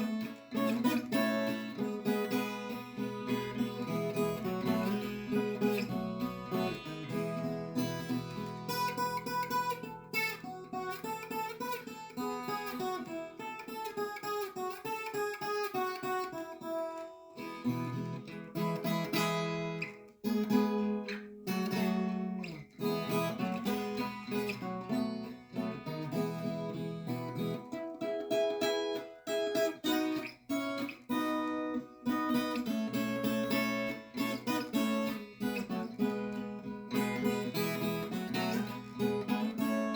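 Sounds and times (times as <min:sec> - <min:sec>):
acoustic guitar strumming: 0:00.0 - 0:39.9.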